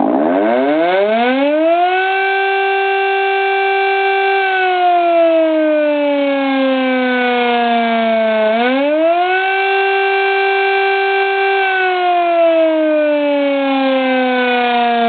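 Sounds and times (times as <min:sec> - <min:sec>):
air raid siren: 0:00.0 - 0:15.0.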